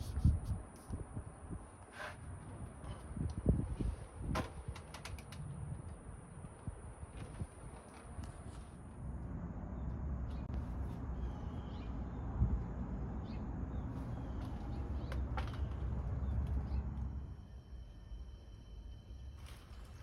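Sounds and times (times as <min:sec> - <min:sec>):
bird chirping: 0:11.1 - 0:12.3.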